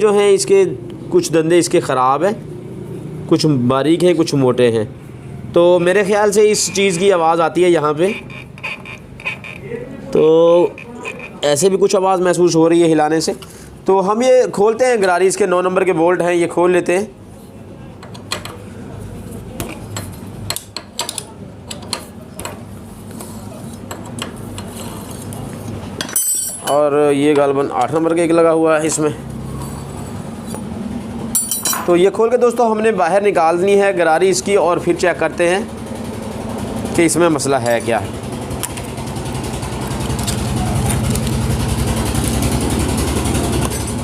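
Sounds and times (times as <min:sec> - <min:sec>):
spanner clicking on bolts: 0:19.6 - 0:22.6
vehicle engine idling: 0:38.0 - 0:44.0.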